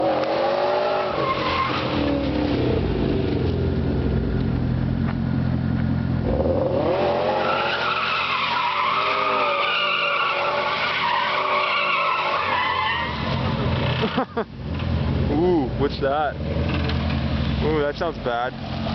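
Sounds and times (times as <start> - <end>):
car engine revving: 0.0 - 18.9
tyres squealing: 7.4 - 13.5.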